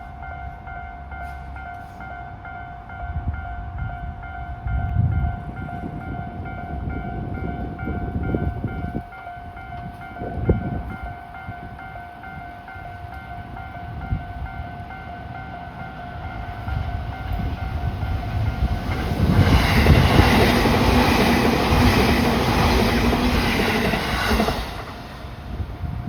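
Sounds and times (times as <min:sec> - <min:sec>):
electric train passing at speed: 0:00.0 - 0:26.0.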